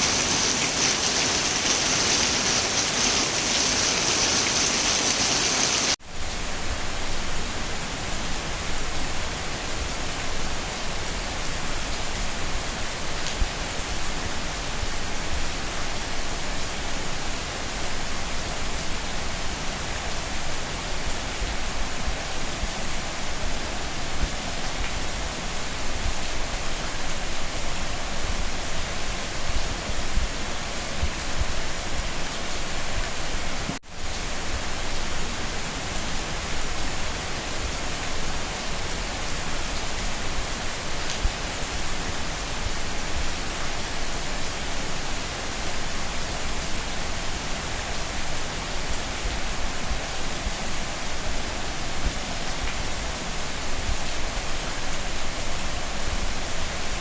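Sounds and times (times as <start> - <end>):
heavy rain falling: 0.0 - 6.0.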